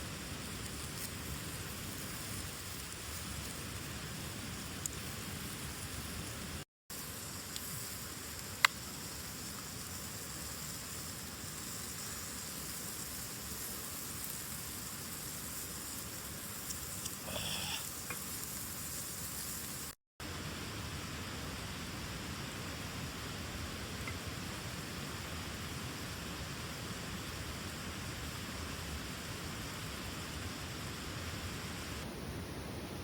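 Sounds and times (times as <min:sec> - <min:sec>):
campfire crackling: 0:00.0 - 0:20.0
steady hiss: 0:00.0 - 0:33.0.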